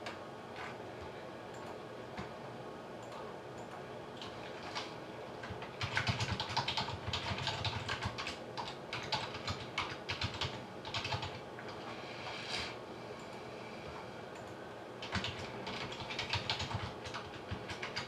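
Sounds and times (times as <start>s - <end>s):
typing on computer keyboard: 3.0s - 11.8s, 14.4s - 18.0s.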